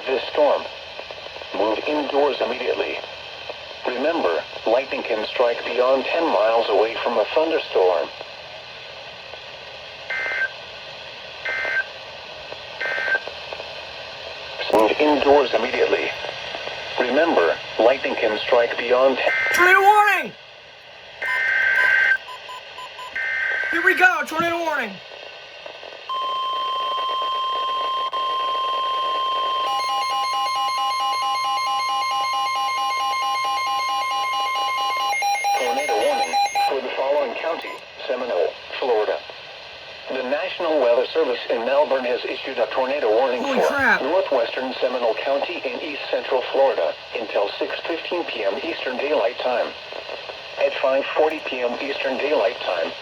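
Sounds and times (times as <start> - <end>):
radio hiss: 0.0 - 20.3, 23.6 - 26.1, 35.6 - 53.0
rapid low-pitched alarm beeps: 21.2 - 23.2, 26.1 - 36.7
steady high alarm tone: 26.1 - 36.7.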